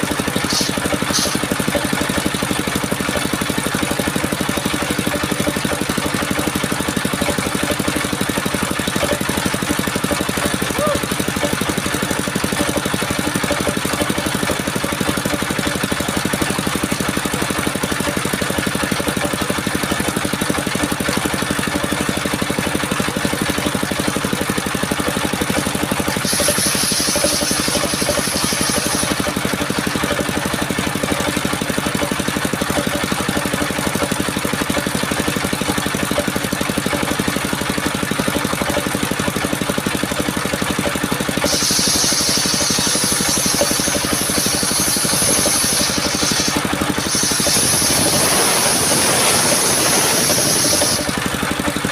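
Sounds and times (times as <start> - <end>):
sawmill engine running: 0.0 - 51.9
higher hiss: 0.5 - 1.4, 41.5 - 51.1.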